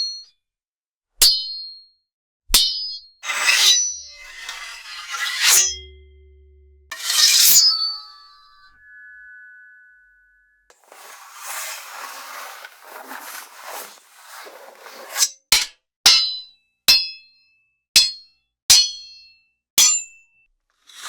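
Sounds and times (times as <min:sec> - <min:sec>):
metallic sword clangs: 0:02.8 - 0:10.2
sword blade swishing and scraping: 0:03.2 - 0:06.1, 0:06.9 - 0:09.8, 0:10.7 - 0:15.4.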